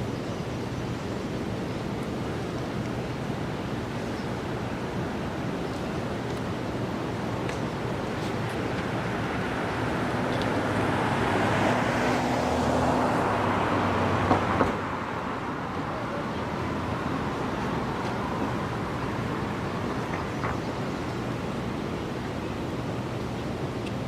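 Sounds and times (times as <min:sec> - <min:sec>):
steady traffic: 0:00.0 - 0:24.0
wind blowing steadily: 0:00.0 - 0:24.0
vehicle passing: 0:08.8 - 0:19.9.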